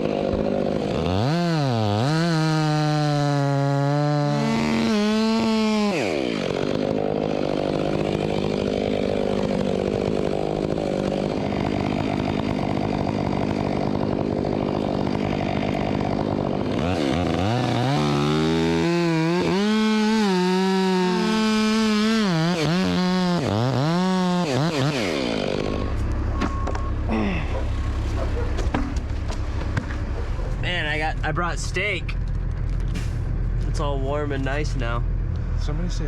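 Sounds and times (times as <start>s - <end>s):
chainsaw running and revving: 0.0s - 32.6s, 33.5s - 36.0s.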